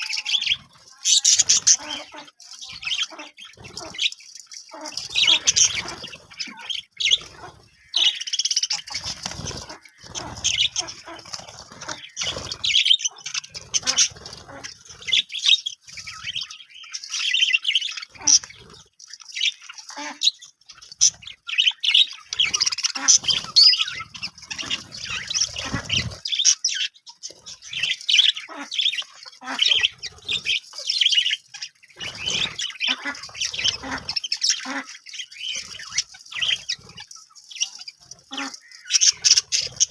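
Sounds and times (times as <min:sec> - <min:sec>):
budgerigars chirping and chattering: 0:00.0 - 0:39.9
harsh squawks: 0:27.5 - 0:39.9.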